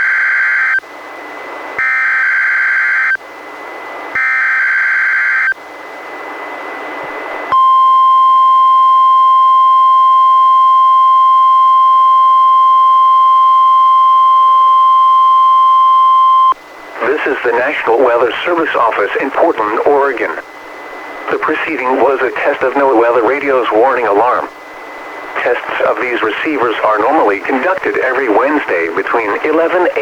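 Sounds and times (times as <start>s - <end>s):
steady warning alarm tone: 0.0s - 6.6s, 7.5s - 30.0s
radio hiss: 16.0s - 30.0s.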